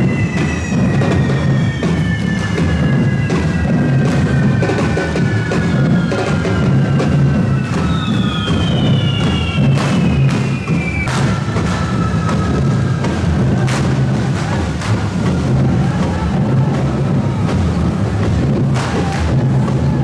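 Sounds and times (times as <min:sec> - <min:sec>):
drum band beating rhythm: 0:00.0 - 0:20.0
whistling fireworks: 0:00.0 - 0:20.0
firework cracks: 0:11.0 - 0:11.9.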